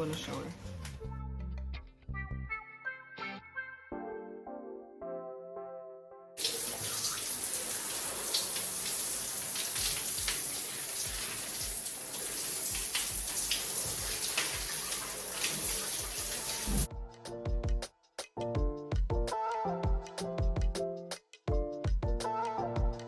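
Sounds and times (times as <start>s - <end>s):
shower running: 0.0s - 1.0s, 6.4s - 16.9s.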